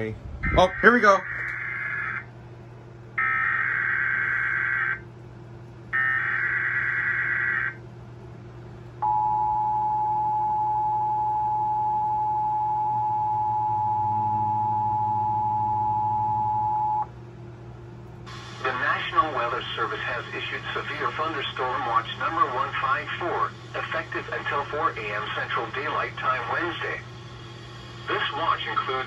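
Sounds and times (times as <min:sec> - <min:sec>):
two-tone attention signal: 0:09.0 - 0:17.1.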